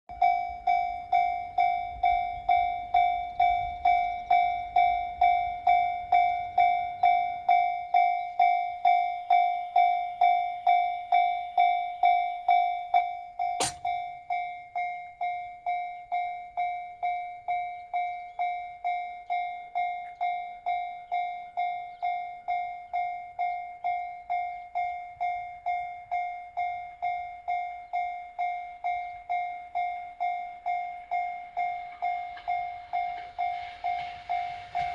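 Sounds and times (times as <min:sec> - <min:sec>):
sharp click: 0:13.6 - 0:13.9.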